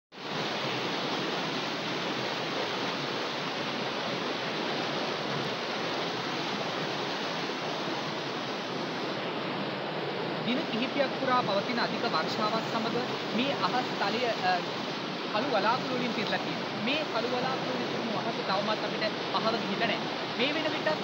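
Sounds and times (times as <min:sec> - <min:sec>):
water rushing: 0:00.1 - 0:21.0.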